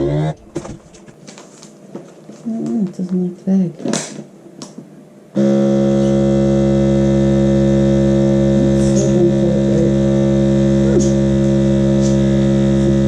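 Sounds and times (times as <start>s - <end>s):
vacuum sealer pump humming: 0.0s - 1.1s, 5.3s - 13.0s.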